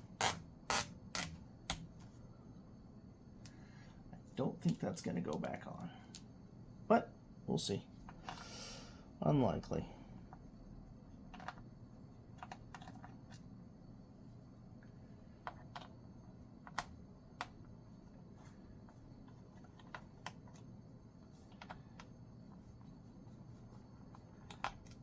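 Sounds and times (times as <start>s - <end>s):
low steady hum: 0.0s - 25.0s
laptop parts clicking and tapping: 11.3s - 11.6s, 12.3s - 13.4s, 15.4s - 16.0s, 16.6s - 17.6s, 18.8s - 20.7s, 21.5s - 22.2s, 24.1s - 25.0s.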